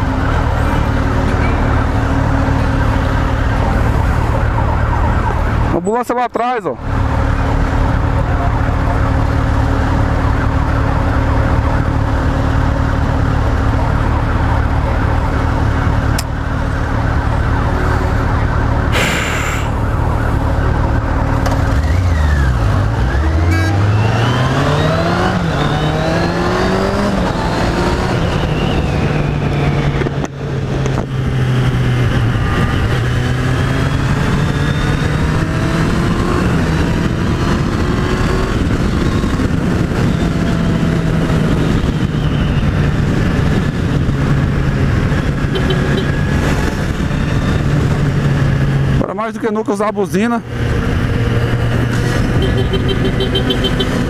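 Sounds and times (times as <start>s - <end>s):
motorcycle engine revving: 6.9s - 49.0s, 50.2s - 54.0s.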